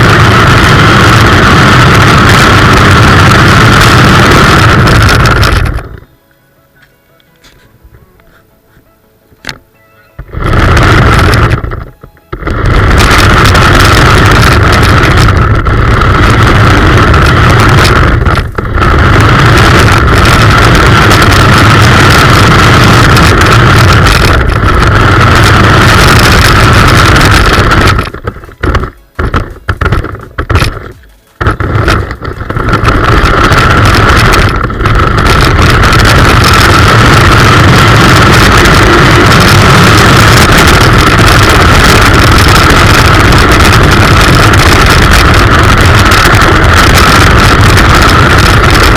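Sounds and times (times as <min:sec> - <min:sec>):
rough rumble: 0:00.0 - 0:06.3, 0:09.4 - 0:48.9
toy car motor whining: 0:10.2 - 0:48.9.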